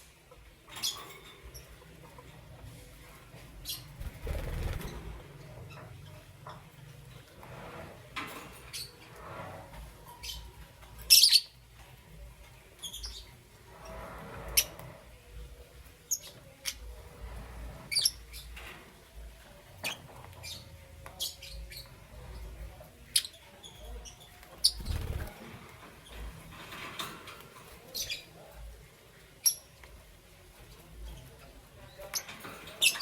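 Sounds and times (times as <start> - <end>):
lovebirds chirping and squawking: 10.0 - 11.9, 12.7 - 13.4, 16.0 - 18.8, 19.7 - 26.7.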